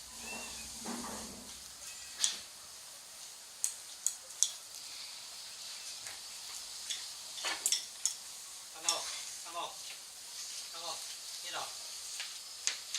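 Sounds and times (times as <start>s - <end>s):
steady hiss: 0.0s - 12.9s
cat call: 1.8s - 2.4s.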